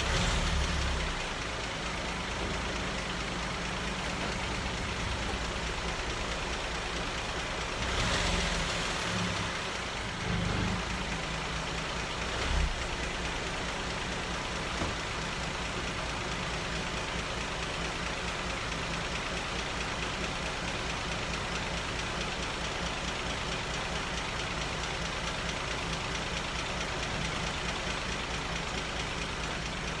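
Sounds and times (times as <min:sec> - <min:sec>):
car engine idling: 0:00.0 - 0:30.0.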